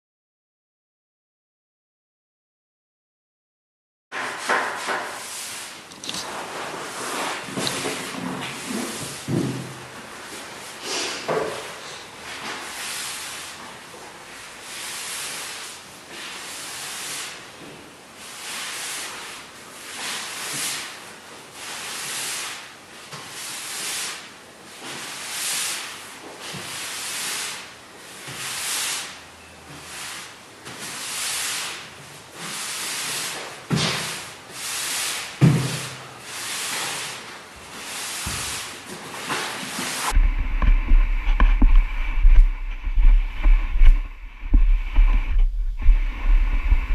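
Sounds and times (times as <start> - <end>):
applicator swishing on floorboards: 5.9 - 9.6, 36.6 - 46.9
low hum: 40.1 - 46.9.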